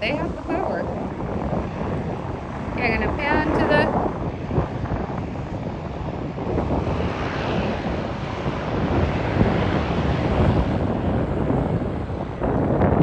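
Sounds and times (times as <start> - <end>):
floatplane engine running: 0.0 - 13.0
wind buffeting microphone: 0.0 - 13.0.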